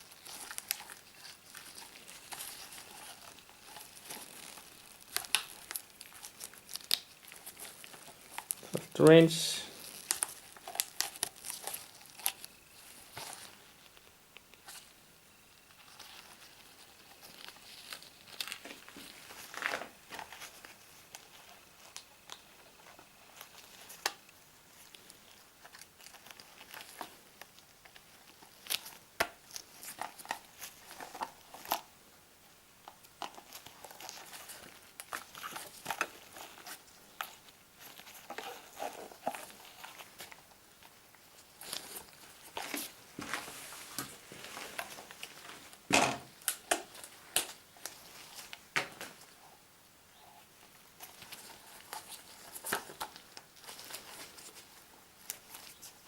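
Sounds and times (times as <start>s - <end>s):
packaging clicks and scrapes: 33.2s - 40.4s.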